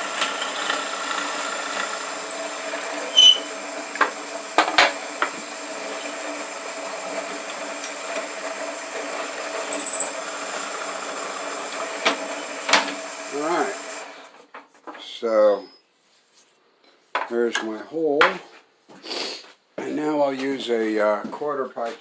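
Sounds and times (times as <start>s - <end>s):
drill press motor hum: 0.0s - 14.1s.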